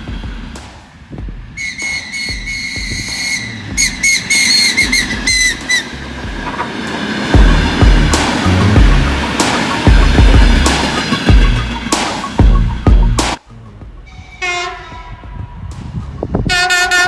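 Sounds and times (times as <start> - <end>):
heavy low music beat: 0.0 - 17.0
moving train rumble: 0.0 - 17.0
train whistle blowing: 1.6 - 6.6, 14.1 - 15.6, 16.5 - 17.0.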